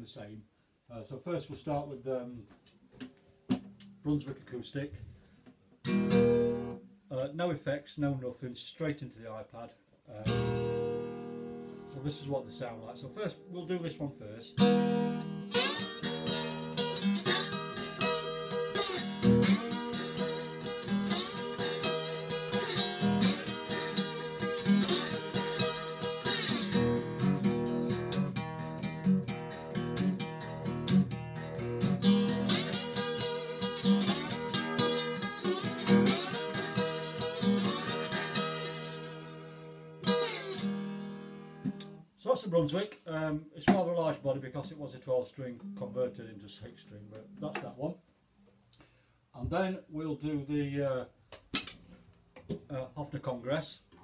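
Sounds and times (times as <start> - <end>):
acoustic guitar strummed and picked: 5.8 - 6.9, 10.2 - 42.1.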